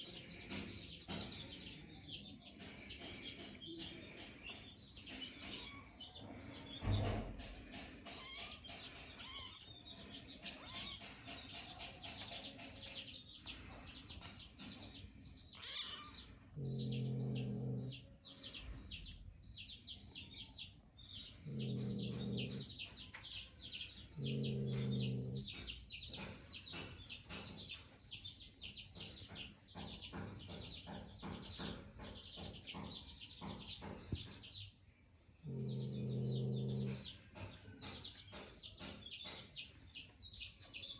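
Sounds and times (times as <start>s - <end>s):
cat growling: 15.6s - 18.0s, 35.4s - 37.1s.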